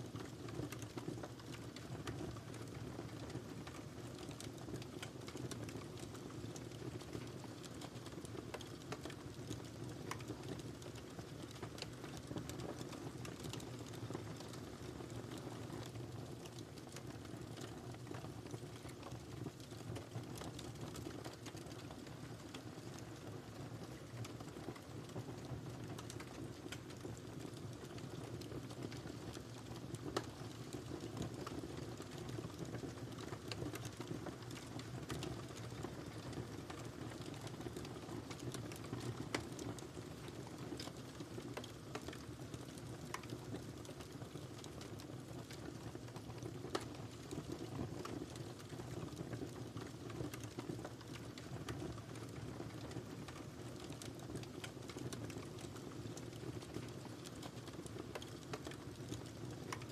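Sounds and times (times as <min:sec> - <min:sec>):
wood fire crackling: 0:00.0 - 0:59.9
fire popping: 0:23.9 - 0:59.9.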